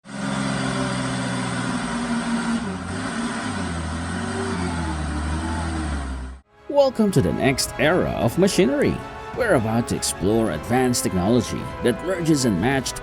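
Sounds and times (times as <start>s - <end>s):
motor engine running: 0.0s - 6.4s.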